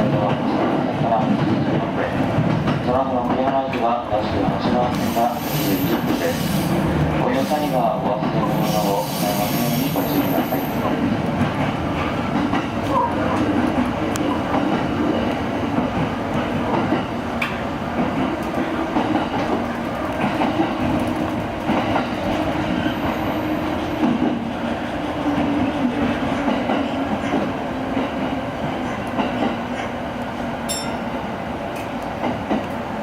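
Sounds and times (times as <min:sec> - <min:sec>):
electric train running on rails: 0:00.0 - 0:33.0
low train hum: 0:00.0 - 0:33.0.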